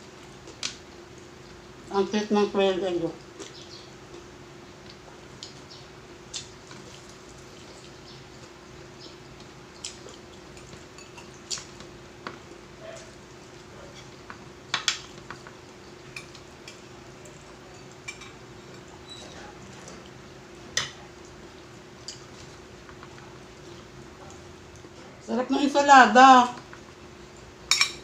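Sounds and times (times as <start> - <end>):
cutlery clinking on plates: 27.7 - 28.0.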